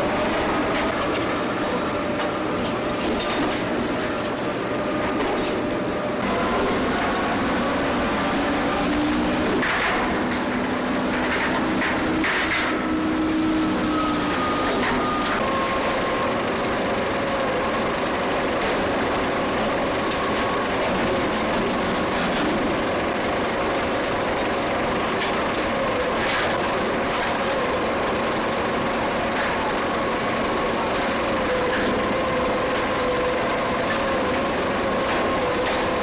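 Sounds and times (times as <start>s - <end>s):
ship machinery drone: 0.0s - 36.0s.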